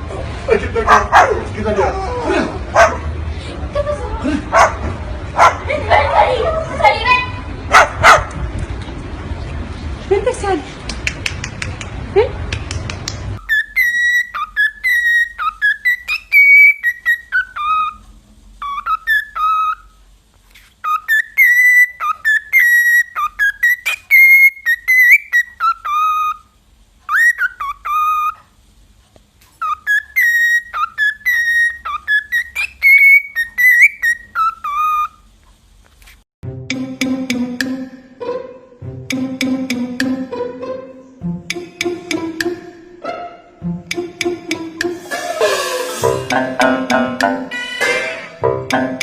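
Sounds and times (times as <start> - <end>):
bird whistling: 13.4 - 18.0, 18.6 - 20.0, 20.8 - 26.5, 27.1 - 28.4, 29.6 - 35.2.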